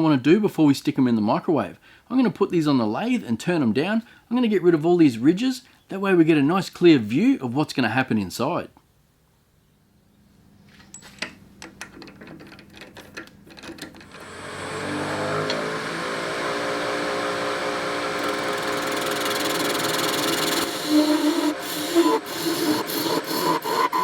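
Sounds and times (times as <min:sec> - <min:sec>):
clicks and knocks: 0:10.9 - 0:14.2
lathe motor humming: 0:14.1 - 0:24.0.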